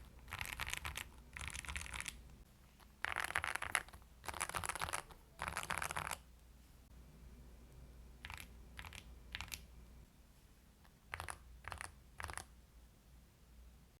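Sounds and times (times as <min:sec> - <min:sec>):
keyboard keystrokes clacking: 0:08.2 - 0:09.6.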